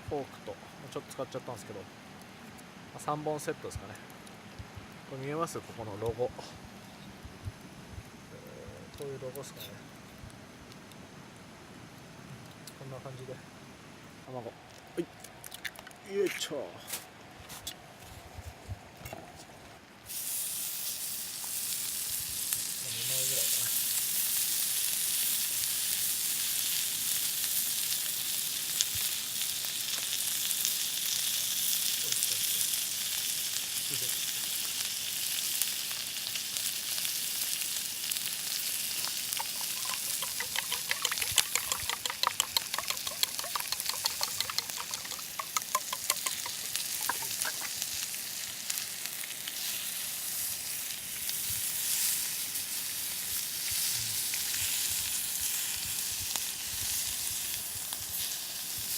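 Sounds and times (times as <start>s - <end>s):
meat sizzling on iron griddle: 20.1s - 58.9s
sharp pops and crackles: 32.0s - 51.7s, 53.1s - 58.9s.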